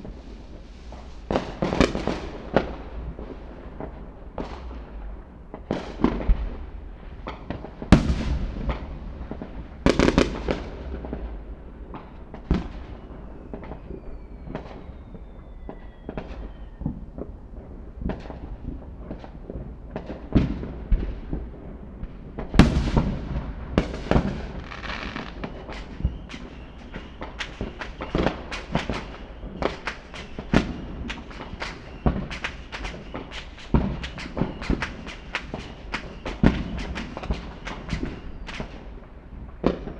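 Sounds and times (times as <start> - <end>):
fireworks bangs and booms: 0.0 - 39.9
falling firework whistle: 11.9 - 17.2, 22.6 - 39.9
rapid crackling pops: 23.8 - 38.7.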